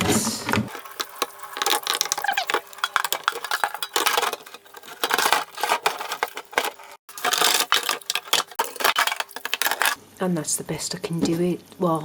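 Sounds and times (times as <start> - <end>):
detergent drawer clicking and scraping: 0.7 - 10.0.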